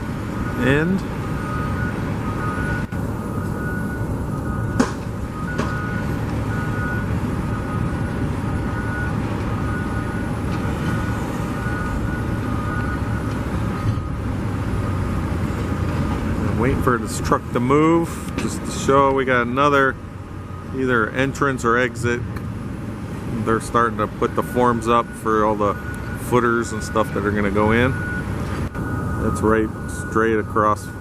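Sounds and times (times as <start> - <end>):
truck engine rumbling: 0.0 - 31.0
backup alarm beeping: 0.3 - 15.3, 24.0 - 31.0.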